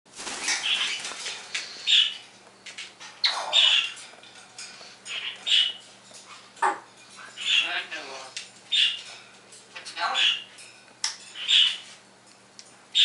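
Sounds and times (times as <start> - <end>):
parrot squawking calls: 3.2 - 4.0, 5.1 - 5.8, 6.6 - 9.0, 9.8 - 10.5, 11.3 - 11.9.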